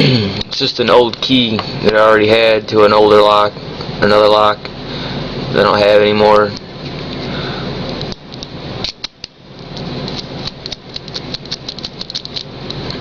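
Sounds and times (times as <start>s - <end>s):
keys and lock parts clicking: 10.1s - 12.5s.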